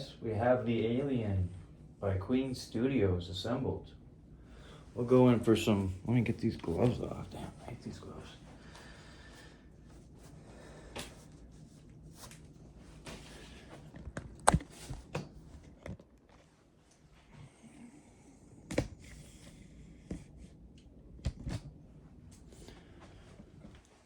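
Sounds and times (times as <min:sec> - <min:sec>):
sharp clicks and knocks: 0:14.0 - 0:16.1.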